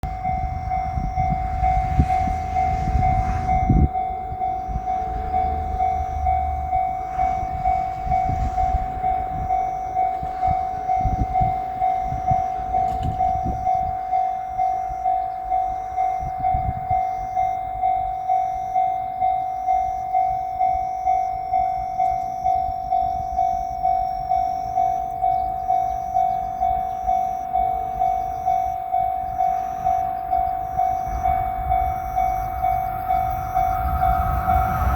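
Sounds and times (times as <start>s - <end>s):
railroad crossing warning bell: 0.0s - 34.9s
train wheels clattering over rails: 4.7s - 13.8s.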